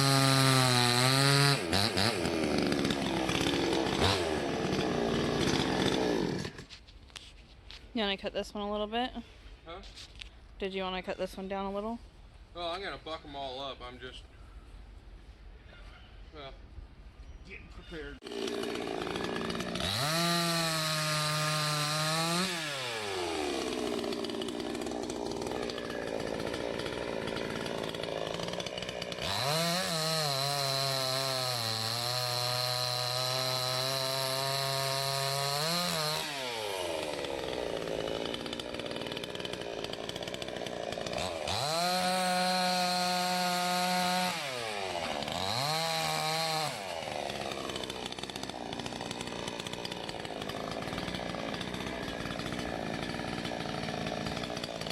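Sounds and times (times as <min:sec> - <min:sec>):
chainsaw revving and idling: 0:00.0 - 0:06.7, 0:18.2 - 0:54.9
chainsaw cutting wood: 0:00.0 - 0:06.9, 0:18.2 - 0:54.9.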